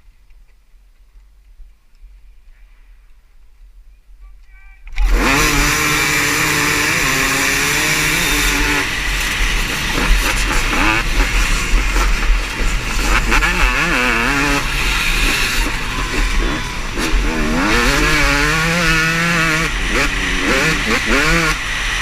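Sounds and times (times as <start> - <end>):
motorbike engines revving: 4.9 - 22.0.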